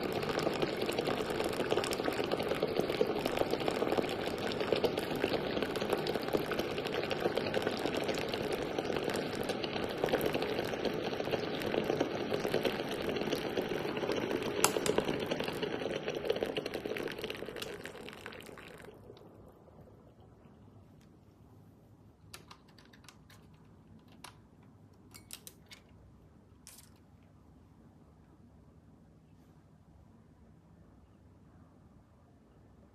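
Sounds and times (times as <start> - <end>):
water streaming into a cup: 0.0 - 19.5.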